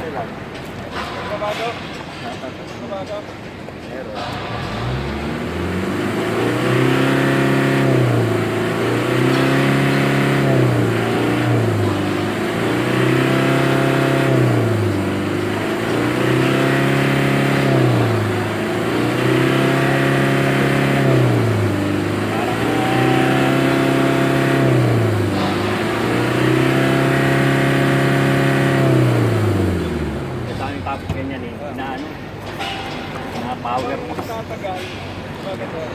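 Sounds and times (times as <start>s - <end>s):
diesel engine revving: 4.2s - 31.6s.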